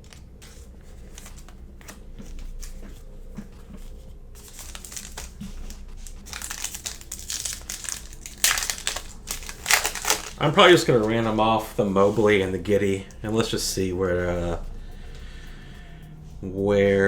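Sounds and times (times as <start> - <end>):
wrapper crinkling: 0.0 - 13.6.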